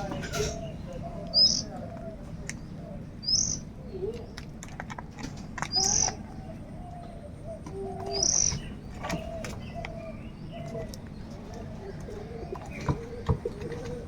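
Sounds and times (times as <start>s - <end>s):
lower-pitched bird calls: 0.0s - 4.4s, 5.6s - 13.3s
loud high-pitched bird call: 3.2s - 3.6s, 8.1s - 8.6s.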